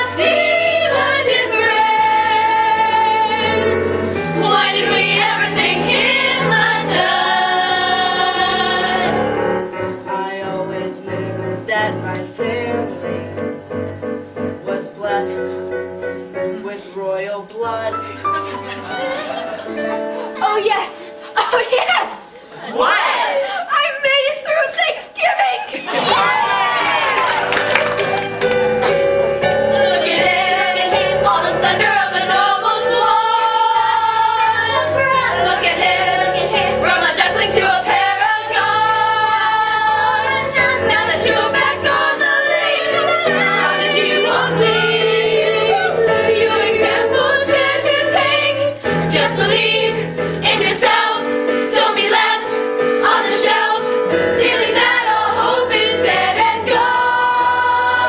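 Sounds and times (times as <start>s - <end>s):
chorus of voices singing: 0.0s - 13.6s, 28.4s - 58.0s
instrumental accompaniment: 27.1s - 58.0s.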